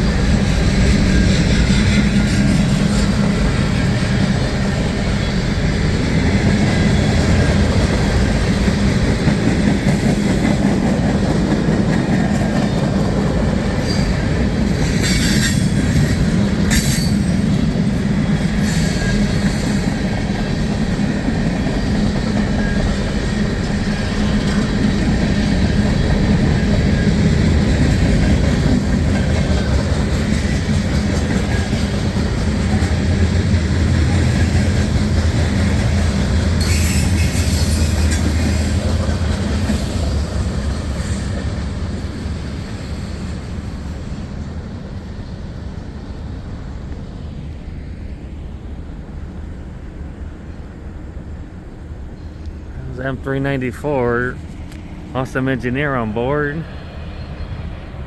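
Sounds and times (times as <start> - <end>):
train wheels rumbling on rails: 0.0 - 58.0
high wheel squeals: 13.8 - 17.5, 18.4 - 28.9, 36.6 - 44.4.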